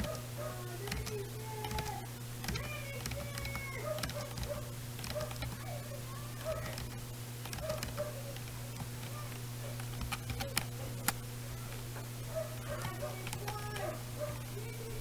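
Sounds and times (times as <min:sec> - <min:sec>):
keyboard keys clicking: 0:00.0 - 0:14.9
electrical hum: 0:00.0 - 0:15.0.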